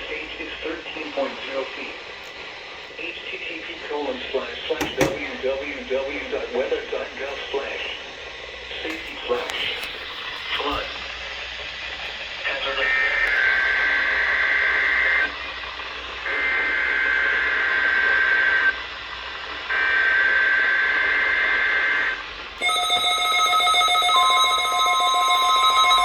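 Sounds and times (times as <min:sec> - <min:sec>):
weather radio warning alarm tone: 0:04.8 - 0:05.4, 0:22.6 - 0:26.0
steady alert of held tones: 0:22.6 - 0:26.0.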